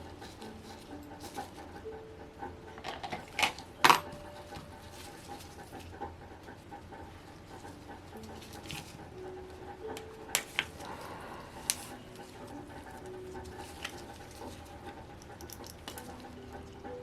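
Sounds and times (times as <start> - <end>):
steady hum: 0.0 - 17.0.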